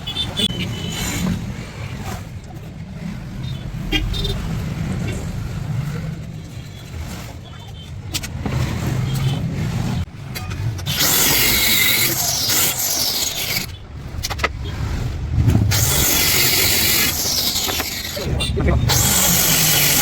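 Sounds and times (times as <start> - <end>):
power tool whining: 18.8 - 20.0.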